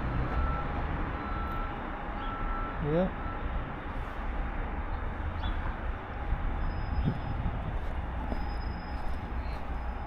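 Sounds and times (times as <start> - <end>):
city background rumble: 0.0 - 10.0.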